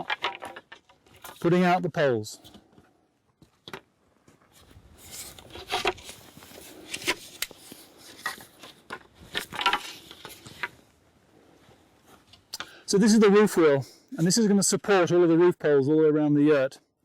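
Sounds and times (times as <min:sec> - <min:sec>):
wooden poles knocking and clattering: 0:00.0 - 0:10.9.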